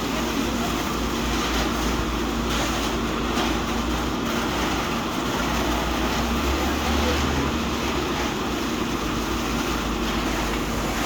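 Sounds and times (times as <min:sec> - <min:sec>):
water pump hum: 0:00.0 - 0:11.0.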